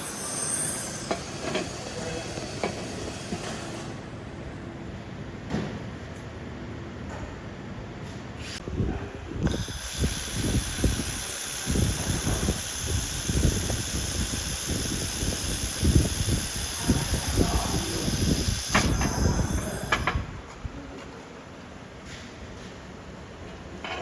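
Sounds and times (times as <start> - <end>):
gas hissing: 0.0 - 3.9, 8.6 - 20.5.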